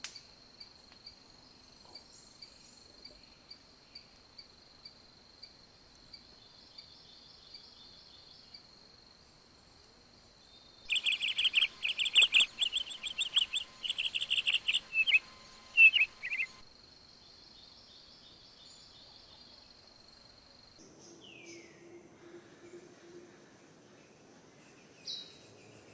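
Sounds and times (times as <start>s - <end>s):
bird chirping: 10.5s - 16.6s, 20.8s - 25.9s
high insect trill: 10.9s - 17.7s.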